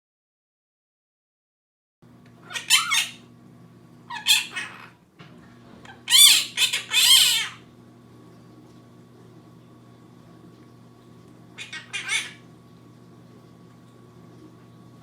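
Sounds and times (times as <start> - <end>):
faint low hum: 2.1 - 15.0
parrot squawking: 2.4 - 3.3, 4.1 - 5.0, 5.8 - 7.7, 11.6 - 12.4.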